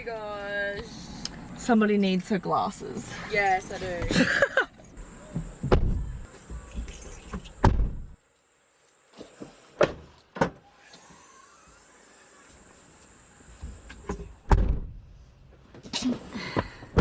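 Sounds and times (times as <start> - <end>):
car doors thudding: 5.4 - 6.2, 7.4 - 8.1, 14.4 - 15.0.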